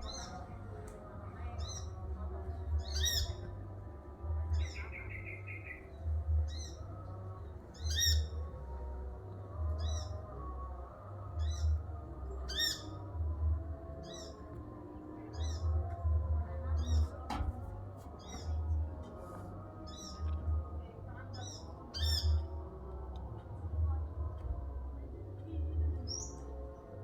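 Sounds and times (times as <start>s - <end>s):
bird trill: 12.5s - 13.0s.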